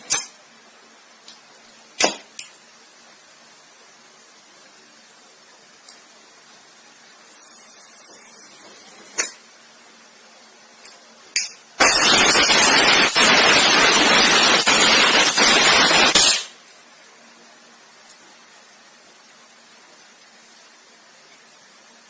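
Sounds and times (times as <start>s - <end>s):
gas hissing out: 7.2s - 9.4s, 11.8s - 16.6s.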